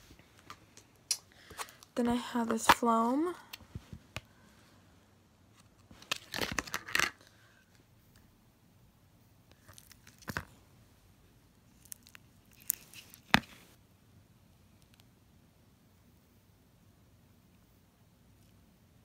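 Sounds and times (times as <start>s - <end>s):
foam slime crackling and popping: 11.7s - 13.8s.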